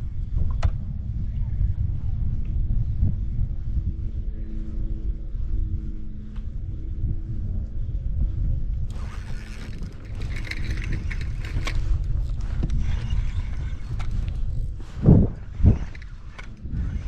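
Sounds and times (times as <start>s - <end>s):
wind rumbling on microphone: 0.0s - 17.0s
scattered clicks: 8.9s - 14.7s, 15.6s - 17.0s.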